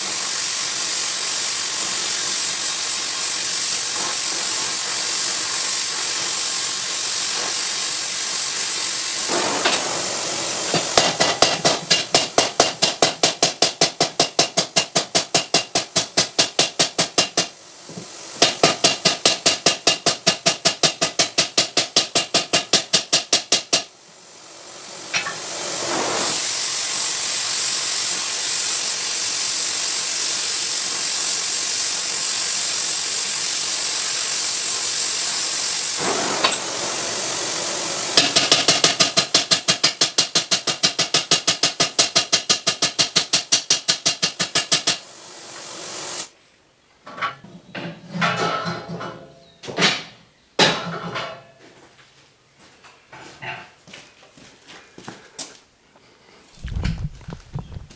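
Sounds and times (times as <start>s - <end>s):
forge hiss: 0.0s - 43.1s, 43.7s - 46.5s
rapid hammer blows on metal: 10.6s - 23.9s, 38.1s - 45.0s.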